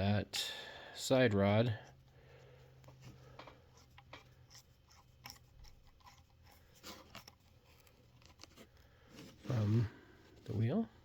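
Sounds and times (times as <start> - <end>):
small wrench clicks and scrapes: 2.8 - 7.4.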